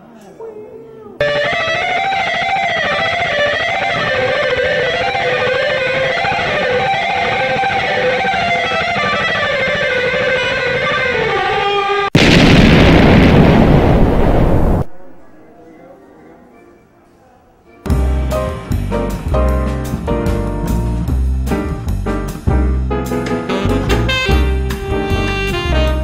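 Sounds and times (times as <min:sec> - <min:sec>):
electric guitar music: 0:01.2 - 0:12.1, 0:17.9 - 0:26.0
loud explosion: 0:12.1 - 0:15.0.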